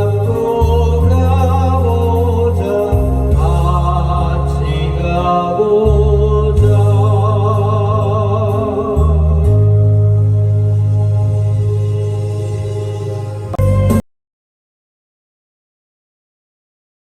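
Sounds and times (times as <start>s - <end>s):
person singing long wavering notes: 0.0s - 10.2s
backing track with bass line: 0.0s - 14.0s.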